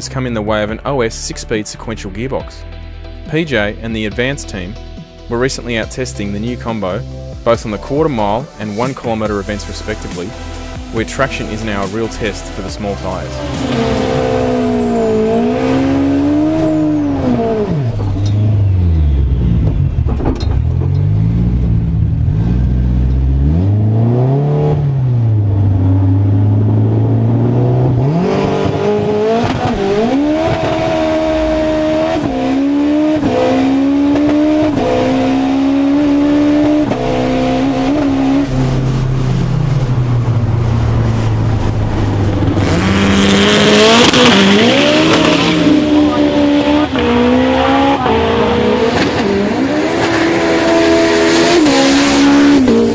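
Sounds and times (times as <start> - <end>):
car engine revving: 3.9 - 52.9
rushing noise: 37.1 - 52.9.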